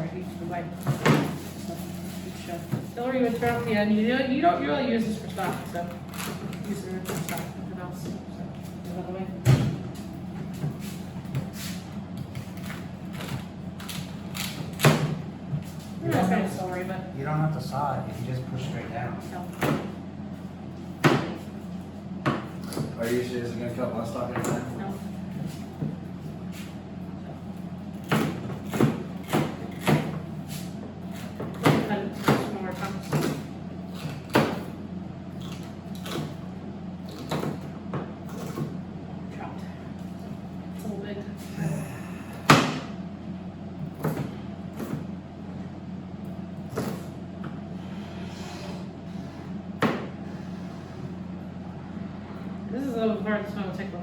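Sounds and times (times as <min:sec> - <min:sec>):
steady low hum: 0:00.0 - 0:54.0
knife chopping on cutting board: 0:28.0 - 0:30.2.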